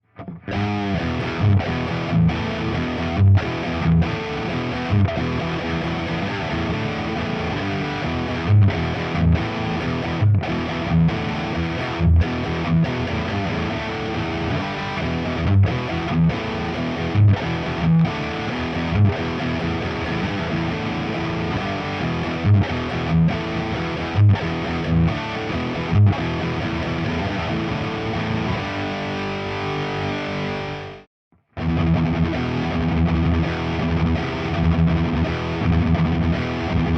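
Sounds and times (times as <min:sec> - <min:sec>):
distorted electric guitar riffs: 0:00.0 - 0:36.9.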